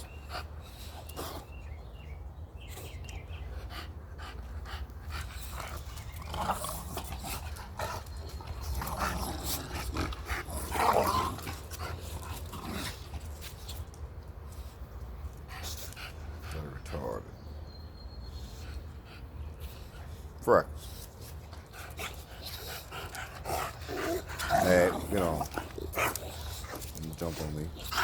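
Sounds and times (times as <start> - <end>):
dogs scuffling: 21.0 - 28.0
dog vocal sounds: 21.7 - 28.0.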